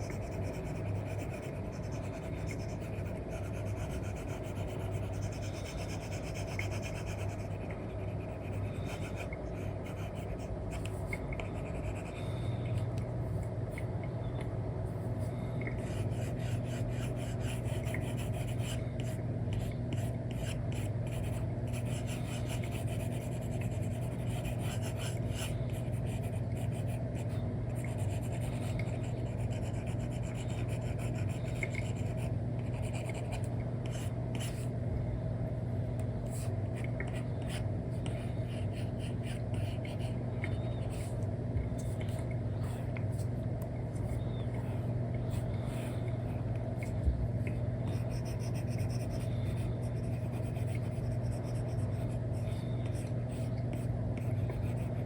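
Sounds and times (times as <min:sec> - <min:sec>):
stylus scratching on screen: 0:00.0 - 0:12.2, 0:47.9 - 0:52.6
low background hum: 0:00.0 - 0:55.0.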